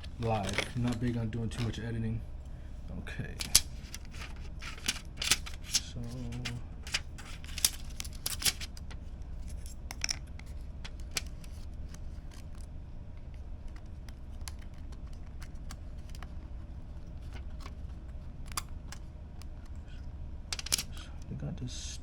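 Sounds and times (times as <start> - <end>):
steady low hum: 0.0 - 22.0
plastic packaging clicks and crackles: 9.8 - 16.4.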